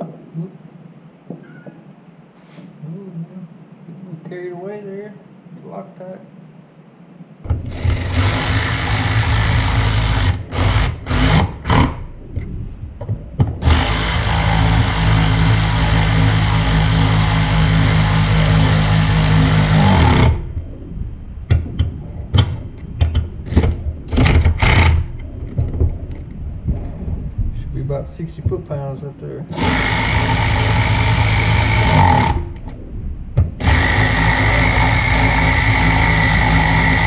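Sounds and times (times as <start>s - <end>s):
handheld power tool running: 7.6s - 12.0s, 13.6s - 20.4s, 29.5s - 32.4s, 33.6s - 37.0s.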